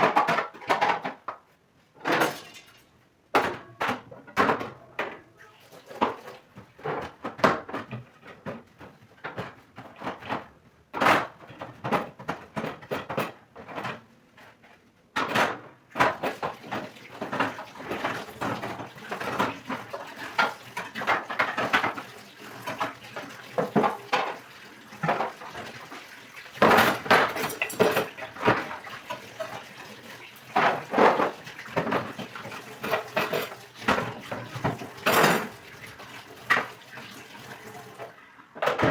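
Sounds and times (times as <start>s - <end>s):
dishes and cutlery clattering: 2.0s - 5.2s, 15.3s - 38.9s.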